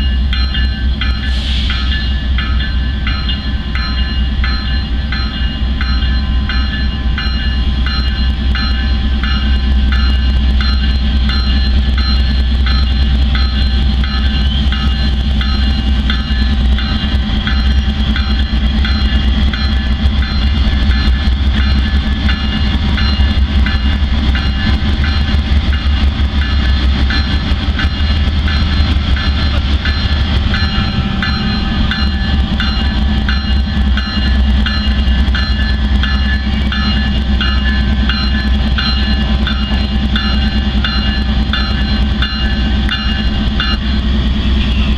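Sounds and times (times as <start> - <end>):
bell ringing: 0.0 - 44.8
diesel locomotive rumble: 0.0 - 44.9
steady high tones: 0.0 - 44.9.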